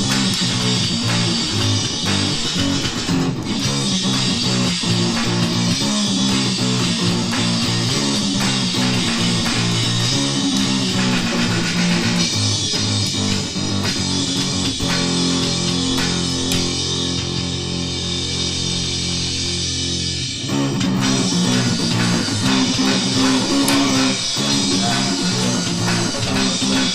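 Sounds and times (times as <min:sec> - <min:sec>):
bass guitar: 0:00.0 - 0:26.9
rock music guitar: 0:00.0 - 0:26.9.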